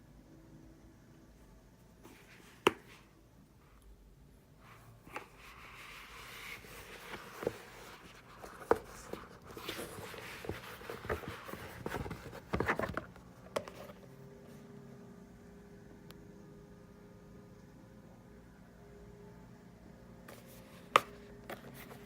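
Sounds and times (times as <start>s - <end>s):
quiet steady hum: 0.0s - 22.0s
packaging rustling: 6.2s - 13.1s.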